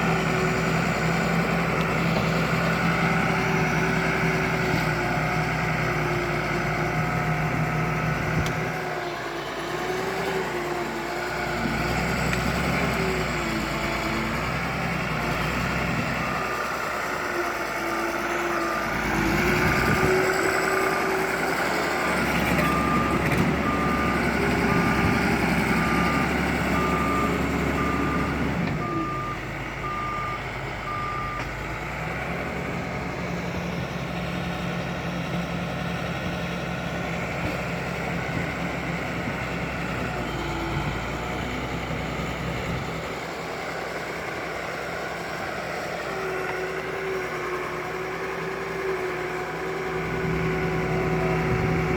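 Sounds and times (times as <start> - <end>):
bulldozer diesel engine running: 0.0 - 51.9
reversing alarm beeping: 17.8 - 31.6.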